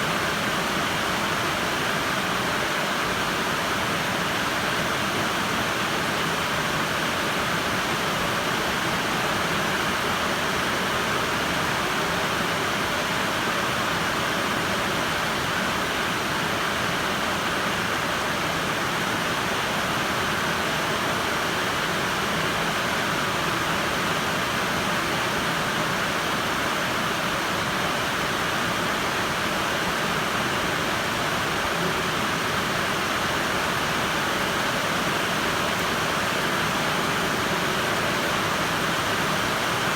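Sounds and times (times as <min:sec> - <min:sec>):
steady rain hiss: 0:14.9 - 0:39.9.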